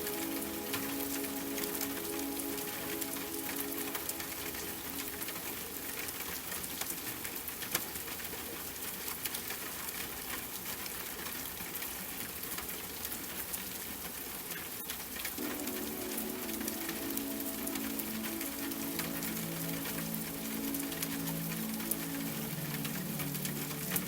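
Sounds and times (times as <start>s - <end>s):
raindrops ticking and spattering: 0.0s - 24.0s
steady rain hiss: 0.0s - 24.0s.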